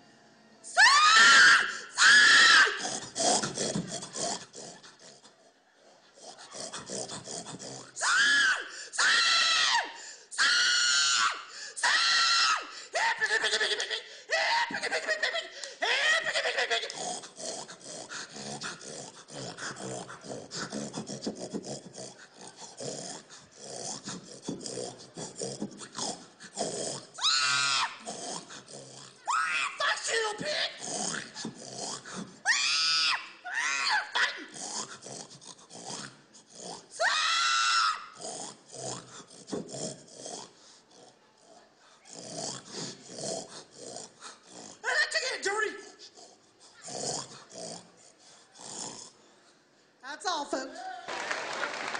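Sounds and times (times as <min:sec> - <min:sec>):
person squealing like a pig: 0:00.8 - 0:04.8, 0:08.0 - 0:09.8, 0:10.4 - 0:17.7, 0:24.0 - 0:28.4, 0:29.2 - 0:35.2, 0:37.0 - 0:38.4
person imitating pig grunts: 0:02.8 - 0:05.3, 0:06.2 - 0:08.0, 0:13.2 - 0:27.3, 0:27.9 - 0:29.3, 0:30.1 - 0:32.4, 0:34.1 - 0:37.0, 0:38.1 - 0:48.0
person grunting: 0:30.0 - 0:32.4.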